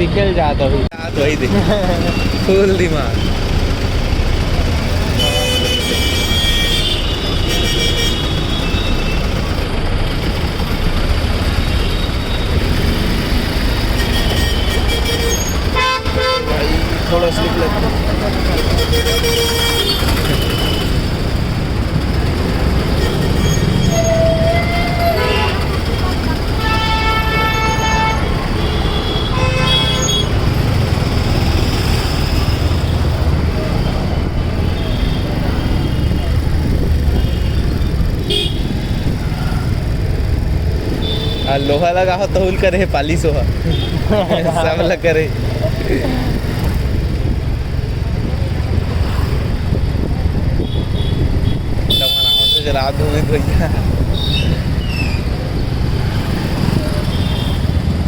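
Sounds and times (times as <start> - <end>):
road traffic rumble: 0.0 - 58.0
vehicle horn honking: 5.1 - 9.2, 13.9 - 16.7, 18.5 - 21.2, 22.9 - 30.5, 38.2 - 39.7, 41.0 - 41.8, 50.6 - 52.7.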